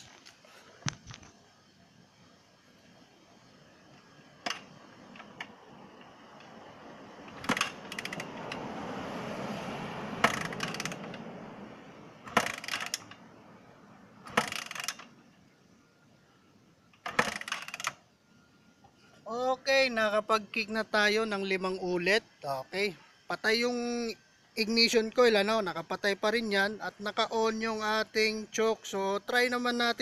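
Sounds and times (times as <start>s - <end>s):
motorcycle kick-starter clanking: 4.4s - 6.6s, 7.2s - 8.7s, 10.2s - 11.2s, 12.2s - 13.2s, 14.2s - 15.1s, 17.0s - 18.0s
rushing noise: 4.8s - 14.4s.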